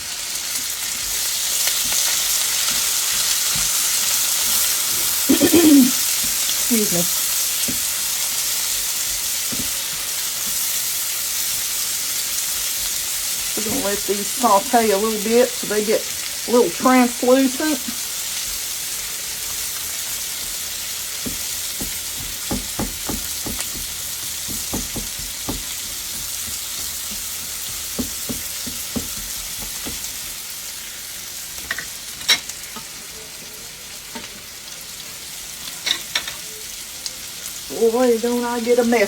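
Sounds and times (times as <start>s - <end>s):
vegetables sizzling in a skillet: 0.0s - 39.0s
utensil tapping in a pan: 20.4s - 30.4s.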